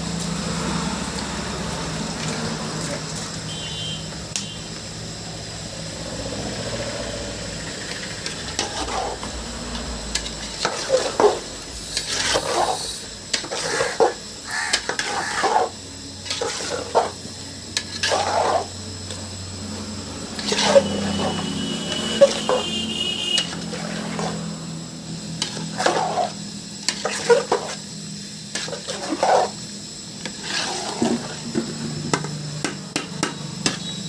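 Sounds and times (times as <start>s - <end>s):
metal spoon scraping a pot: 8.2s - 9.3s, 10.2s - 17.2s, 17.8s - 18.7s, 20.4s - 24.4s, 28.5s - 29.6s, 30.2s - 31.6s.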